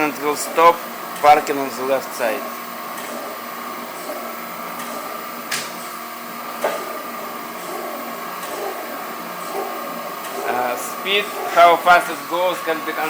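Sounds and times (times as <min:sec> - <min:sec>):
surface grinder humming: 0:06.4 - 0:13.0.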